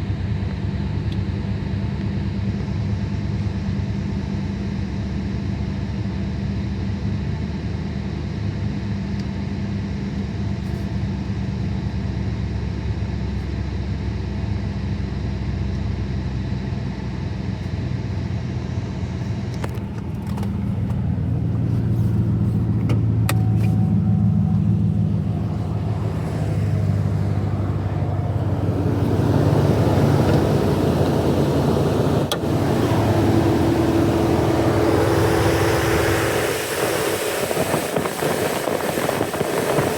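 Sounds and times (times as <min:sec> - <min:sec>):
car engine idling with misfire: 0:00.0 - 0:39.9.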